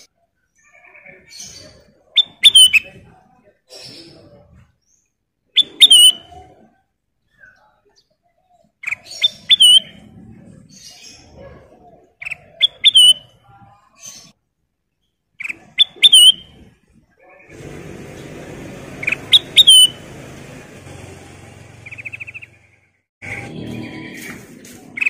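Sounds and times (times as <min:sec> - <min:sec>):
bulbul chirping: 0:15.4 - 0:16.6, 0:19.0 - 0:20.0, 0:21.8 - 0:22.8.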